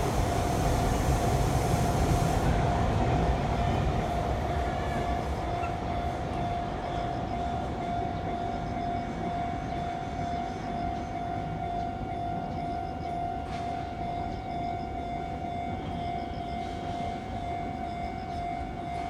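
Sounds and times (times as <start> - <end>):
train rumbling: 0.0 - 19.0
level crossing warning bell: 2.6 - 19.0.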